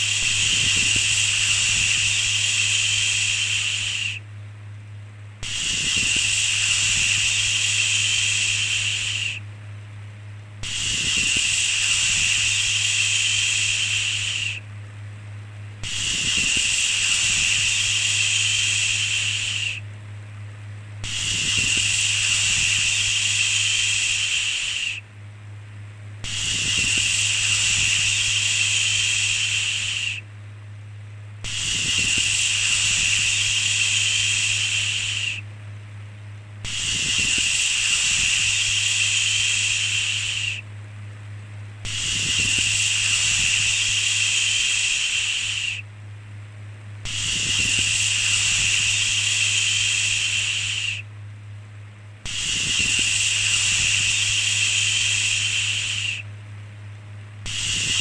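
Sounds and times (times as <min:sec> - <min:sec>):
steady low hum: 0:00.0 - 0:58.0
person shushing: 0:52.3 - 0:56.2.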